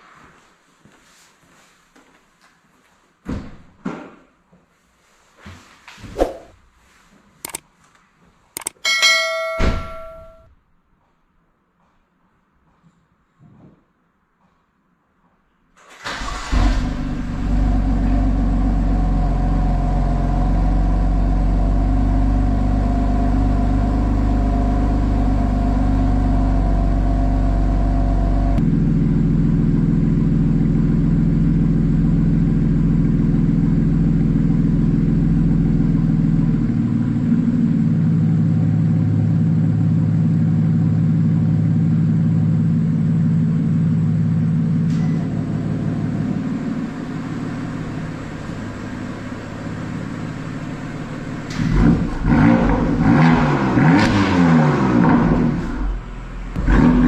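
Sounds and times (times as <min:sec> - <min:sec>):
car engine idling: 0:16.0 - 0:54.0, 0:55.0 - 0:57.0.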